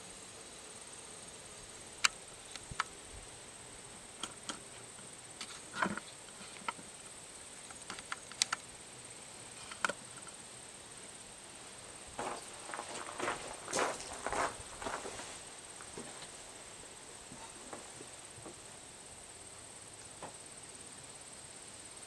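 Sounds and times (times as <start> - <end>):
faint high-pitched whine: 0.0 - 22.0
small sharp clicks: 7.6 - 8.7.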